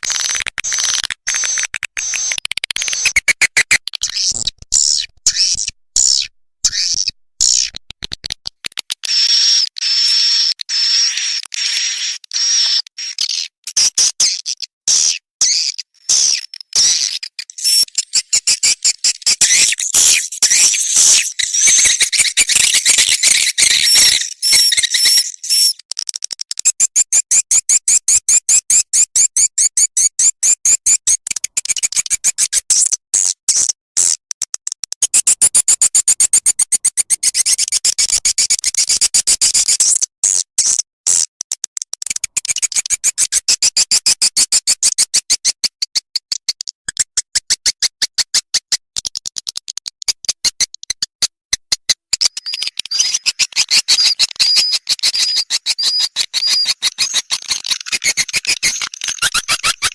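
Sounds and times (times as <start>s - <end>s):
swiftlet chirps and twittering: 0.0s - 7.7s, 9.1s - 25.8s, 52.2s - 59.9s.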